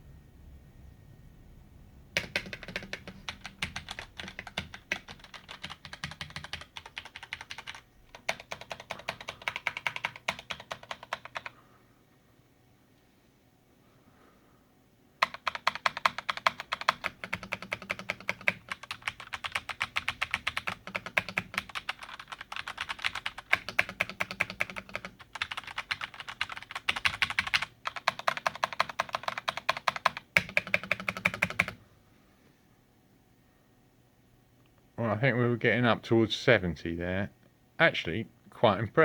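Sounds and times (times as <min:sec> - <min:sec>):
mechanical keyboard typing: 0:02.2 - 0:11.5, 0:15.2 - 0:31.8.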